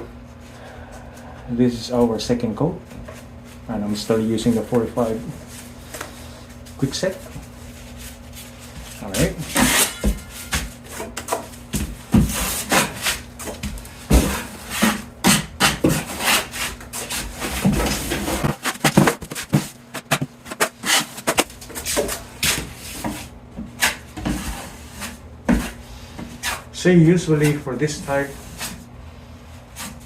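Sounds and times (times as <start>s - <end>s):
drywall knife scraping compound: 9.0s - 11.4s, 12.2s - 13.3s, 14.2s - 21.4s, 23.8s - 26.7s.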